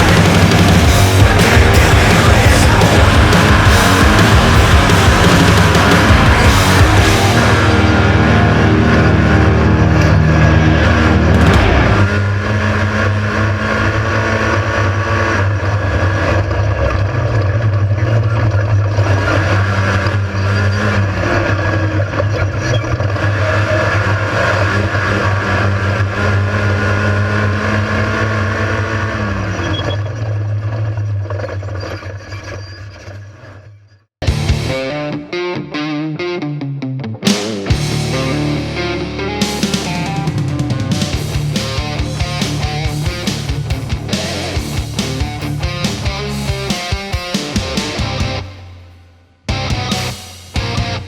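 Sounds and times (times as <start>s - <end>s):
race vehicle engine running hard: 0.0s - 29.7s.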